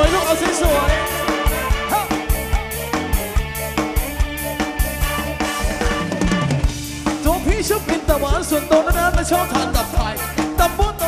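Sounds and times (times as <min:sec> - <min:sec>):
drum kit beat: 0:00.0 - 0:11.0
instrumental band music: 0:00.0 - 0:11.0.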